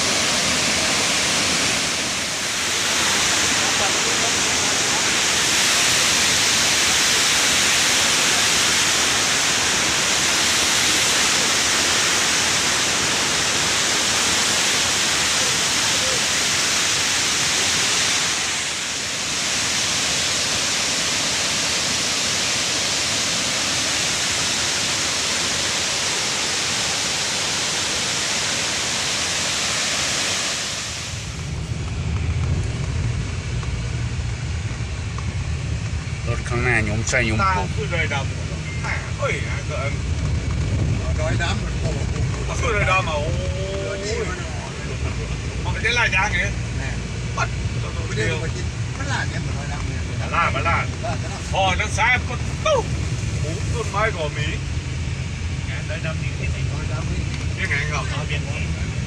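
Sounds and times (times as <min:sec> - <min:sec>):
waterfall rushing: 0:00.0 - 0:31.6, 0:34.0 - 0:40.1, 0:41.0 - 0:59.0
low rumble: 0:30.7 - 0:59.0.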